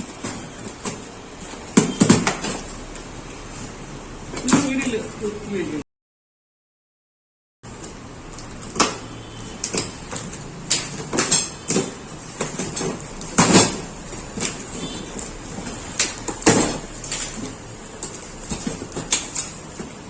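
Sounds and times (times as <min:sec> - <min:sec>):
knocks and clatter of metal parts: 0:09.7 - 0:20.0.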